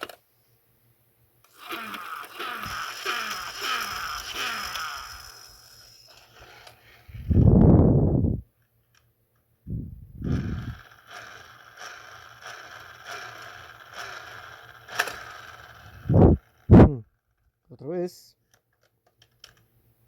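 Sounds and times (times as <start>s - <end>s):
toy track scraping rumble: 1.5s - 7.5s, 10.2s - 16.7s.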